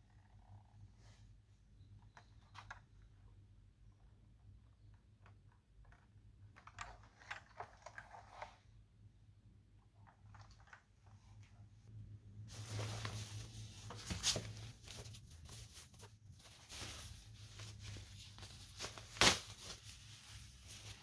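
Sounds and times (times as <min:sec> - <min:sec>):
packaging rustling: 0:12.5 - 0:21.0.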